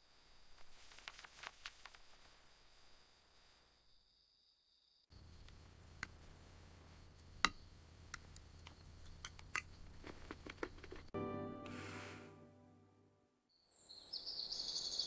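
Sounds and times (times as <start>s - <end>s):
faint low hum: 5.1s - 11.1s.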